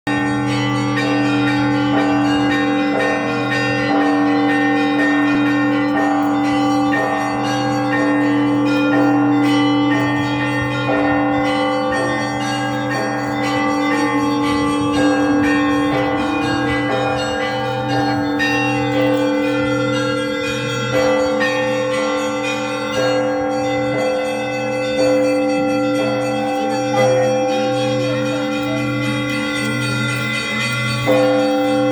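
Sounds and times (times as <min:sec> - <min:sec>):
church bells ringing: 0:00.1 - 0:31.9.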